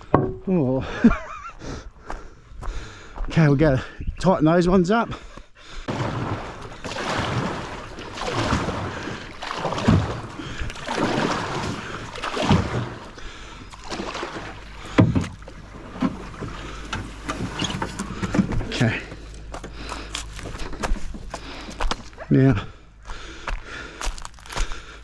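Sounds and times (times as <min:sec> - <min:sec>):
water sloshing and splashing: 0:05.8 - 0:22.3.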